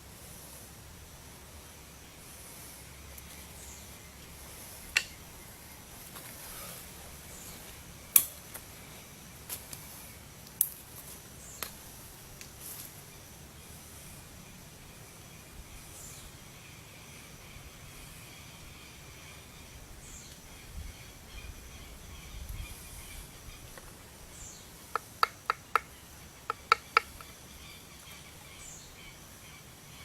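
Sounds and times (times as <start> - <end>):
steady low hiss: 0.0 - 30.0
sharp metallic clicks: 25.0 - 25.9, 26.5 - 27.4.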